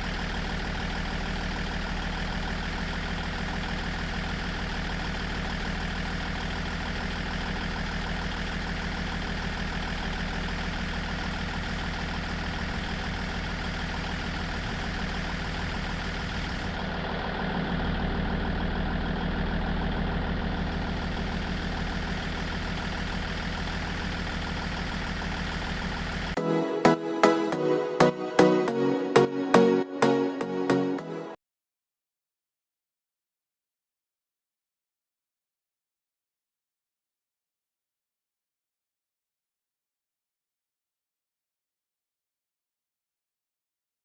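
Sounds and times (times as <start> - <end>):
diesel truck engine idling: 0.0 - 26.4.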